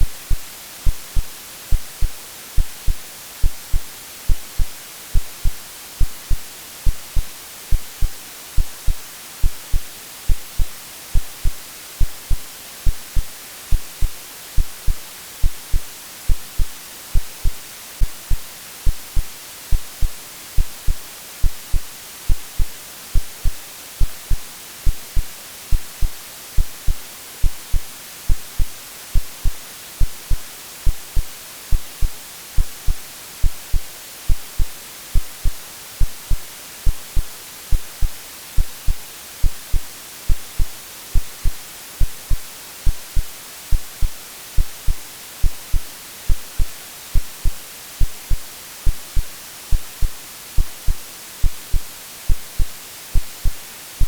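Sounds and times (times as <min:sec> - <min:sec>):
heartbeat thumps: 0:00.0 - 0:53.6
white noise hiss: 0:00.0 - 0:54.0.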